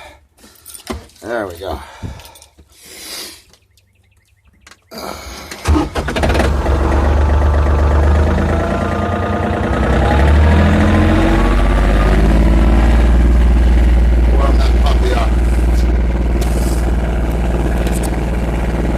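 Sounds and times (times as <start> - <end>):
tractor engine starting and running: 4.6 - 18.9
rising engine whine: 5.6 - 18.9.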